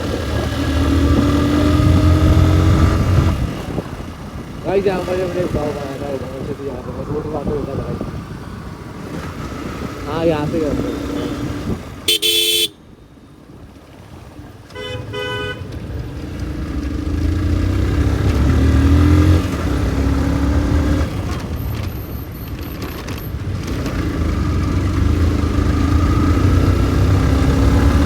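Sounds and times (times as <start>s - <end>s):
motorcycle engine accelerating: 0.0s - 6.4s, 15.5s - 28.0s
road rumble: 0.0s - 28.0s
vehicle horn toots: 11.2s - 13.0s, 14.7s - 15.8s.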